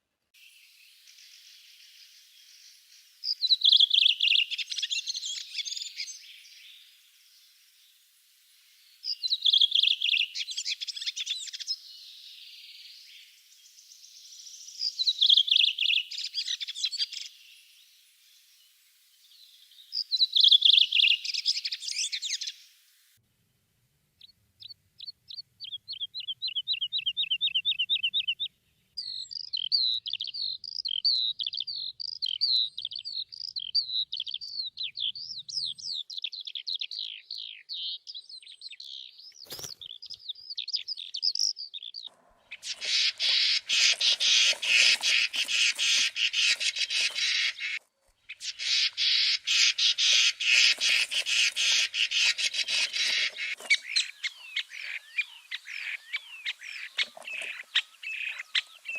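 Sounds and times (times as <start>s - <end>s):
bird warbling song: 0.4s - 7.9s, 8.8s - 18.6s, 19.2s - 22.7s, 24.2s - 58.9s
songbird fast trill: 25.4s - 58.9s
harsh rattling bird chatter: 42.4s - 58.9s.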